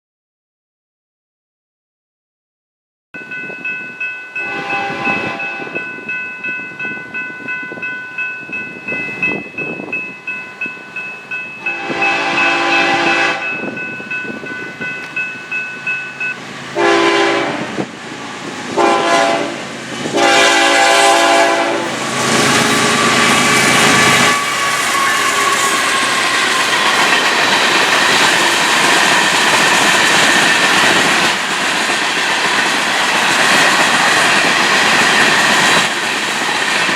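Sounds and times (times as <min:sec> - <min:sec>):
crossing bell ringing: 0:03.2 - 0:17.8, 0:18.4 - 0:36.9
locomotive engine and wheel noise: 0:03.2 - 0:36.9
train air horn: 0:04.4 - 0:05.8, 0:11.7 - 0:13.6, 0:16.8 - 0:17.8, 0:18.7 - 0:26.8.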